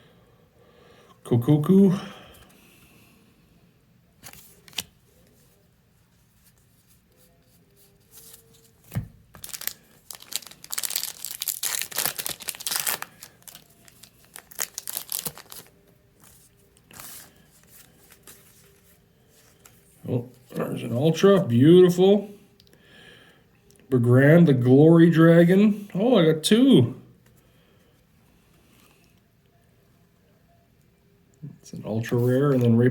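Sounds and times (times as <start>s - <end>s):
foil pack tearing and crinkling: 8.9s - 15.7s.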